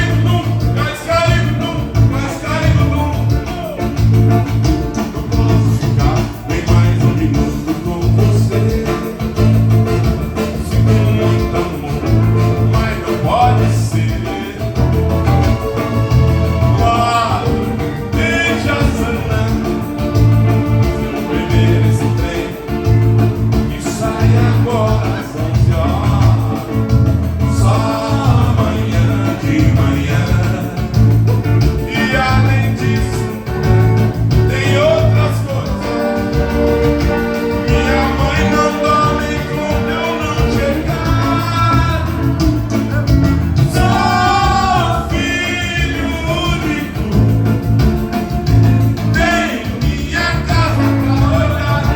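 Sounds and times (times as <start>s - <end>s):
guitar: 0.0s - 51.9s
pulsing bass beat: 0.0s - 51.9s
person singing: 5.0s - 47.9s, 49.0s - 51.9s.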